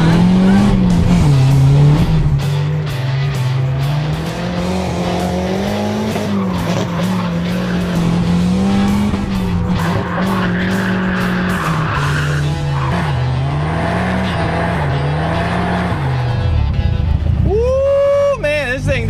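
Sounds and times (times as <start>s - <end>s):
car engine revving: 0.0s - 17.5s
tires squealing: 4.6s - 16.3s.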